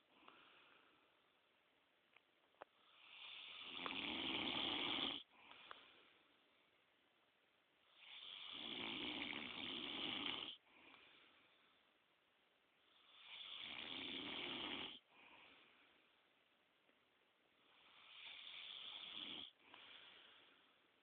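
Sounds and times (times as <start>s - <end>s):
faint breath: 0.0s - 1.4s, 5.2s - 6.5s, 10.5s - 12.1s, 15.0s - 16.3s, 17.6s - 21.0s
man snoring: 2.9s - 5.3s, 7.9s - 10.6s, 13.0s - 15.1s, 17.8s - 19.6s.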